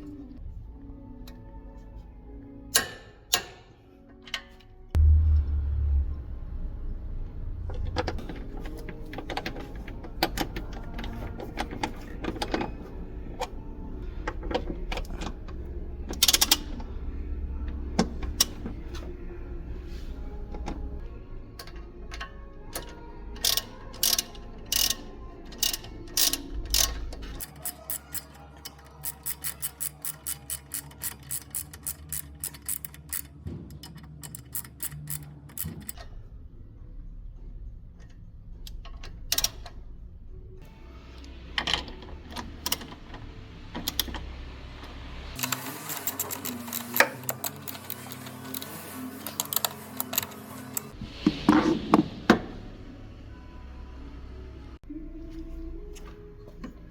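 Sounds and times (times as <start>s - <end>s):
ratchet wrench clicking: 16.1s - 16.8s, 22.7s - 36.0s, 45.4s - 51.0s.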